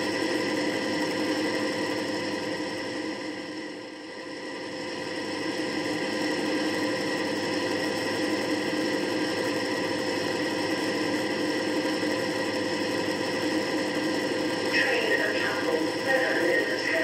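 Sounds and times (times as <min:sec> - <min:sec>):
model locomotive diesel engine drone: 0:00.0 - 0:17.0.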